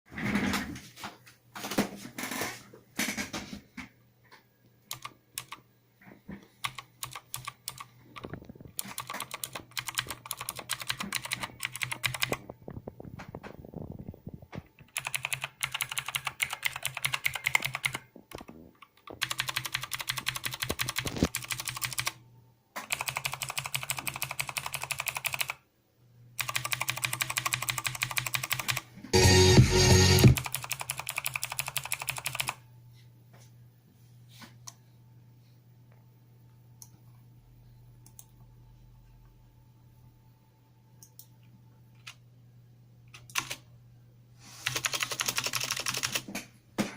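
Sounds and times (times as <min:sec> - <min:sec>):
clicky keyboard typing: 0:04.9 - 0:05.6, 0:06.4 - 0:12.6, 0:14.7 - 0:22.2, 0:22.8 - 0:25.6, 0:26.4 - 0:28.8, 0:30.2 - 0:32.6, 0:38.0 - 0:38.3, 0:41.0 - 0:41.3, 0:43.1 - 0:43.6, 0:44.6 - 0:46.3.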